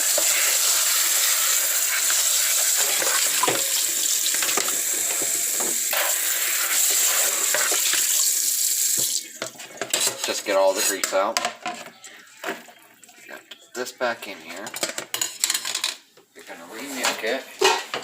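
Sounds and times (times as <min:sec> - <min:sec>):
tap water running over food: 0:00.0 - 0:09.9.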